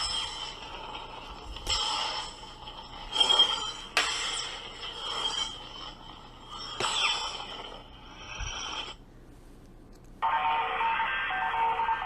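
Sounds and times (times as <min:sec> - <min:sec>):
lightsaber blade hum: 0:00.0 - 0:09.0.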